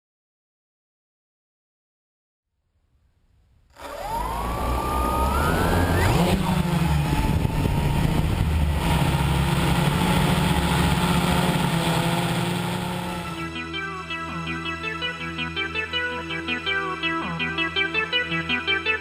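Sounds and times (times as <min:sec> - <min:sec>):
drone motors whining: 0:03.7 - 0:13.5.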